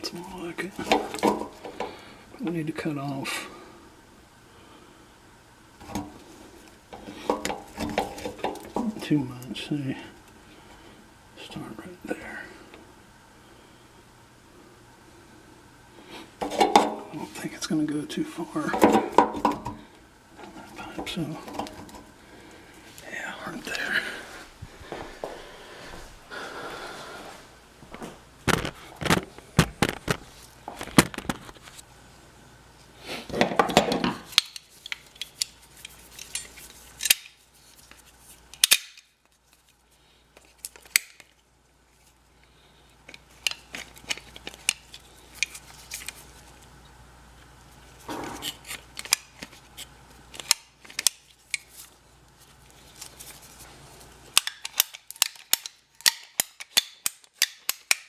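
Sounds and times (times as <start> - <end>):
drain pipe clicks and snaps: 54.4 - 58.0.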